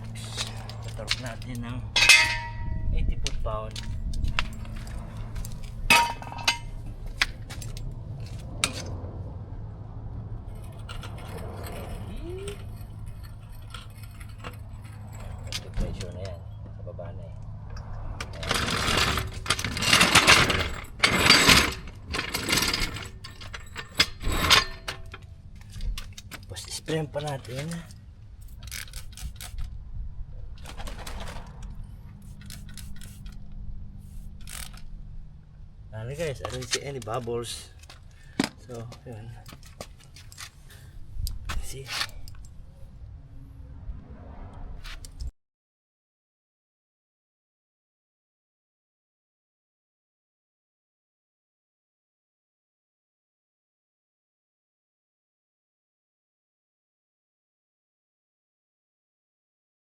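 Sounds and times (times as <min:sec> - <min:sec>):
hand tools clicking on metal: 0:00.0 - 0:07.8, 0:18.2 - 0:29.6
spray bottle squirting: 0:28.8 - 0:29.6, 0:32.2 - 0:33.4.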